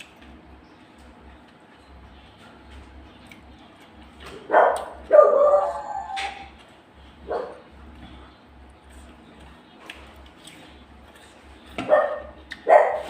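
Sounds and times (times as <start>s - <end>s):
dog barking: 4.4s - 6.1s, 7.2s - 7.6s, 11.8s - 13.0s.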